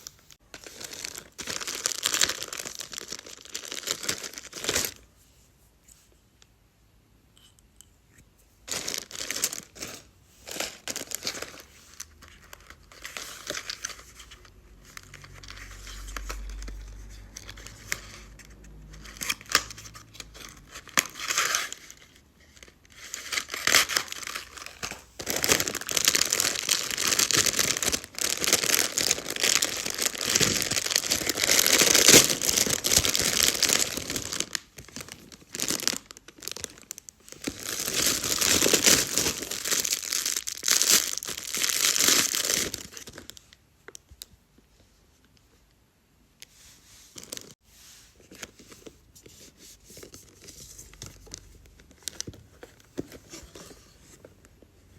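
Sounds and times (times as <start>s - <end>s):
packaging crinkling and tearing: 0.6s - 5.0s, 8.7s - 43.5s.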